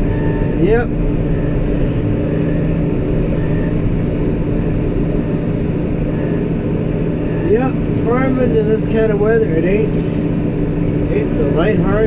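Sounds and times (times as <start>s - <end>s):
farm machine engine running: 0.0s - 12.0s.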